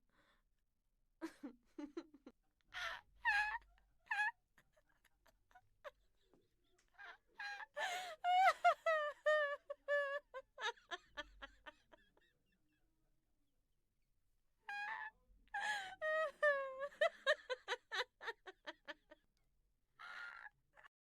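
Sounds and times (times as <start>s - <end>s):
person laughing breathlessly: 4.6s - 12.4s, 15.6s - 19.2s.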